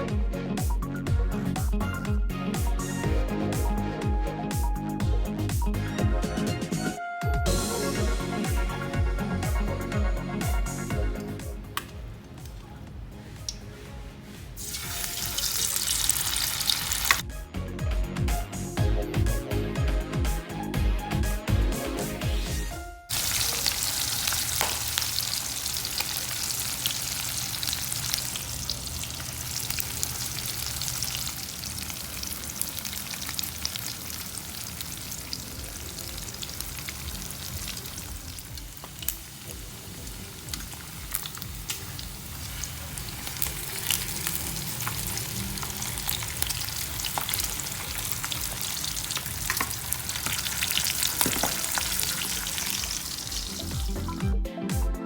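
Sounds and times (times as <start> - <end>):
pork chops frying in oil: 14.6 - 17.2, 23.1 - 54.2.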